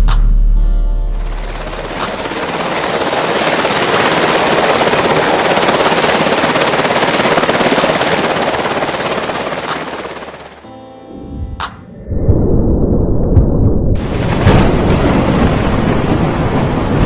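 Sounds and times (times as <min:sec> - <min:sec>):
loud dense rapid rattle: 0:01.2 - 0:10.6.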